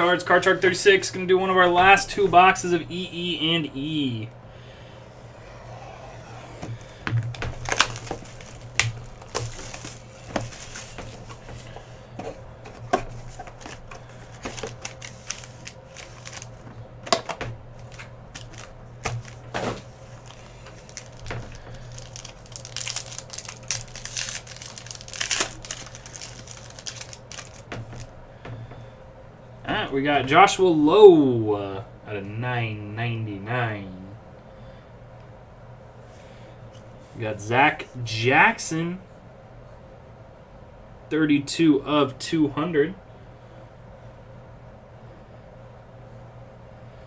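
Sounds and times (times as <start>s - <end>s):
steady low hum: 0.0s - 47.0s
plastic wrapper crinkling and tearing: 5.0s - 11.8s, 13.2s - 17.2s, 17.8s - 28.1s.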